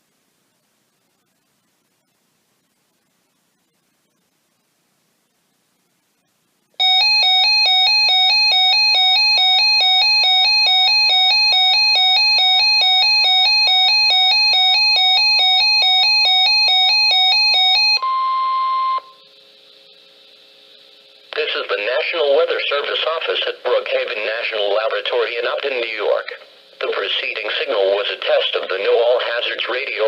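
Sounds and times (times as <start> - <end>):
faint radio hiss: 0.0 - 6.8, 19.1 - 30.0
steady beep: 16.9 - 19.3.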